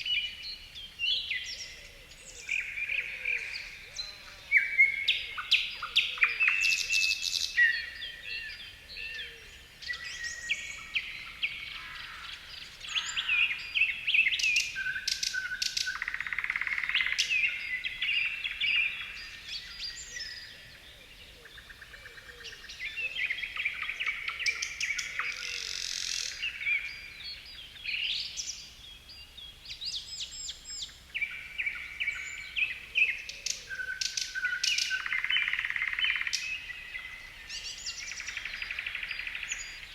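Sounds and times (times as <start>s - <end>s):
songbirds singing and calling: 0.0s - 39.9s.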